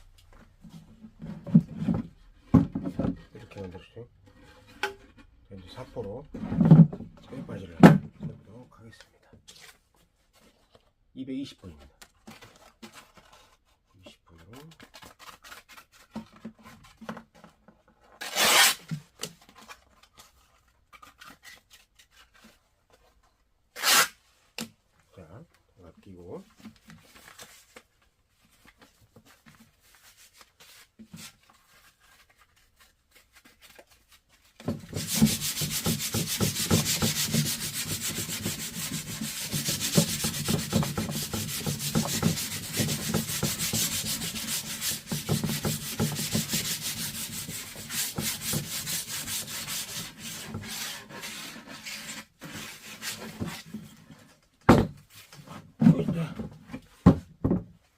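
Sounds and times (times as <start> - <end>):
sandpaper rubbing strokes: 18.2 - 18.8, 23.8 - 24.1, 34.9 - 53.2.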